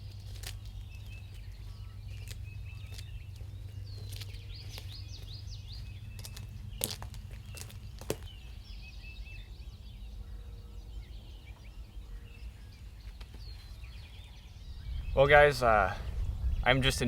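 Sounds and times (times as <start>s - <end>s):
small birds chirping: 0.0s - 17.0s
low rumble: 14.7s - 16.9s.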